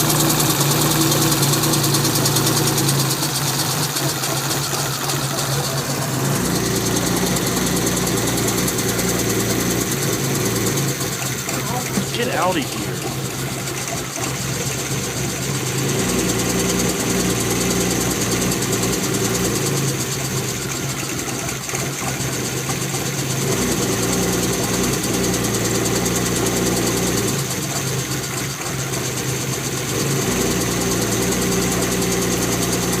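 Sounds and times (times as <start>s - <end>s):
car engine idling rough: 0.0s - 33.0s.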